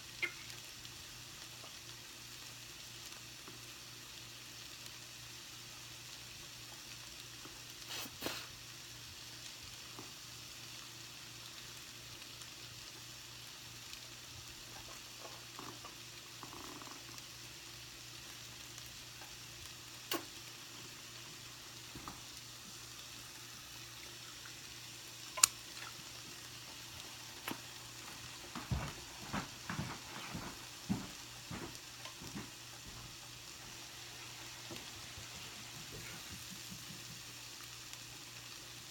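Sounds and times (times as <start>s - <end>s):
food sizzling in a pan: 0.0s - 38.9s
sharp clicks: 25.4s - 25.6s.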